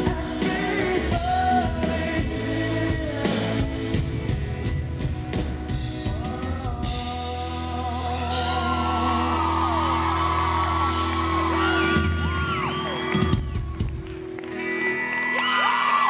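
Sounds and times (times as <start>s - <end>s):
live band holding a rock chord: 0.0s - 16.0s
fans screaming and whooping: 8.3s - 16.0s.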